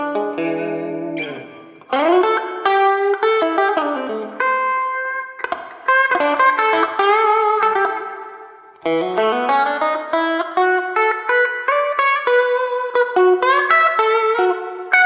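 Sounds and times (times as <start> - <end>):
electric guitar blues licks: 0.0 - 15.0.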